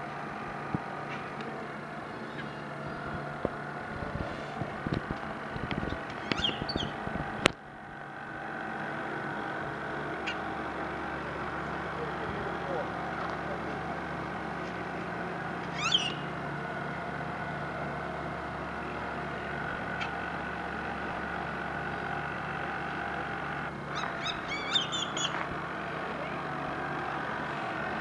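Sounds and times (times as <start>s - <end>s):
steady hum: 0.0s - 28.0s
bird calls: 2.1s - 3.2s, 5.8s - 7.1s, 10.1s - 10.6s, 15.6s - 16.3s, 19.9s - 20.2s, 23.8s - 25.5s.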